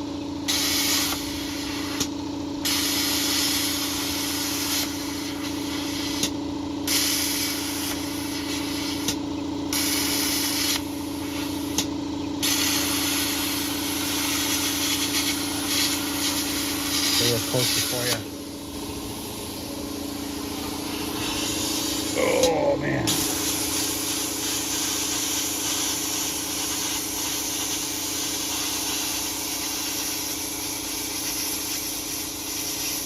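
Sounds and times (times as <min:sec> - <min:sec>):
constant machine hum: 0:00.0 - 0:33.0
plasma cutter arc hissing: 0:00.5 - 0:06.3, 0:06.9 - 0:11.8, 0:12.4 - 0:18.3, 0:20.3 - 0:22.2, 0:23.1 - 0:33.0.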